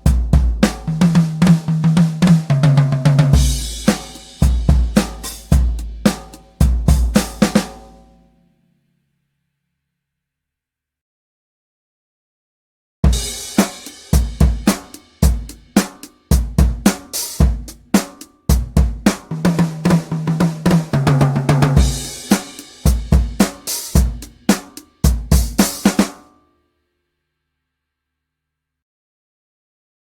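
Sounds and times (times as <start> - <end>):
sampled acoustic drum groove: 0.0 - 8.2, 13.0 - 26.4
cymbal crashes: 3.4 - 7.9, 21.8 - 24.8.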